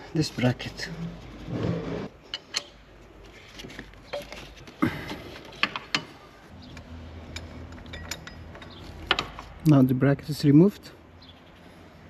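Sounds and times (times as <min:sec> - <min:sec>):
tools clicking on metal: 0:02.3 - 0:02.8, 0:06.7 - 0:09.4.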